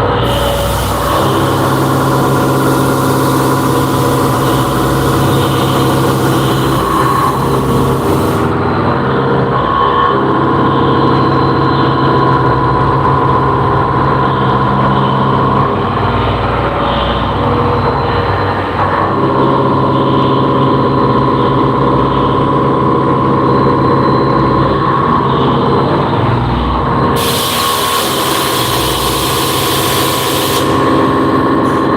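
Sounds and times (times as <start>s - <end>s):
machine whine: 0.0s - 31.9s
machining centre drone: 0.0s - 31.9s
bright hiss: 0.2s - 8.5s, 27.2s - 31.9s.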